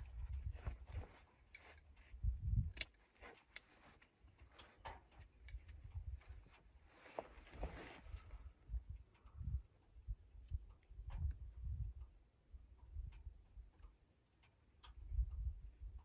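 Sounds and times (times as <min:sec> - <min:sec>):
gear clicking and clinking: 0:00.0 - 0:02.0, 0:02.7 - 0:08.3
footsteps: 0:06.4 - 0:08.4.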